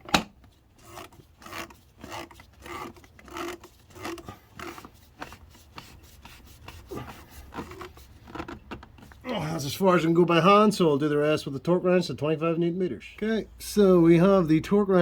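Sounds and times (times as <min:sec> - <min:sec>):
cap scraping as it turns: 0:00.8 - 0:09.2.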